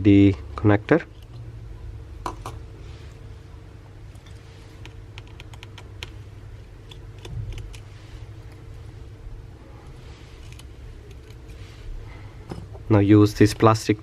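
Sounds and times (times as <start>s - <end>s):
low steady hum: 0.0s - 14.0s.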